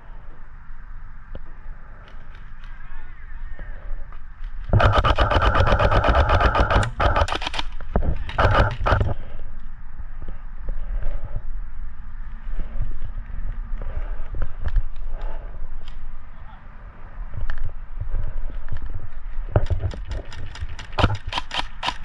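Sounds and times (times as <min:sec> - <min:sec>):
airsoft gun firing bursts: 0:04.7 - 0:09.2, 0:19.6 - 0:22.0.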